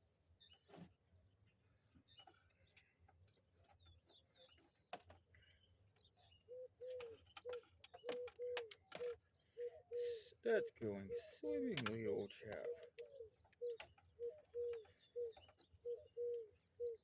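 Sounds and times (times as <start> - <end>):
dove cooing: 6.5 - 17.0
faint clicks and taps: 11.7 - 15.7.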